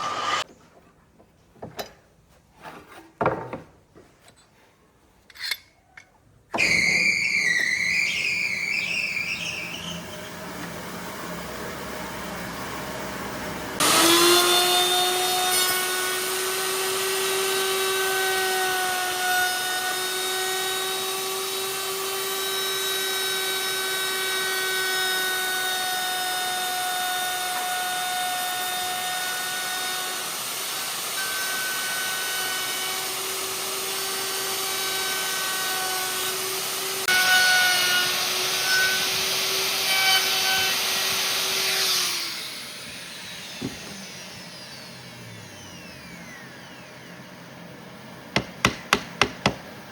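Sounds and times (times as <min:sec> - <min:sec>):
power tool motor whine: 0:00.0 - 0:00.4, 0:13.8 - 0:19.2, 0:20.8 - 0:47.4.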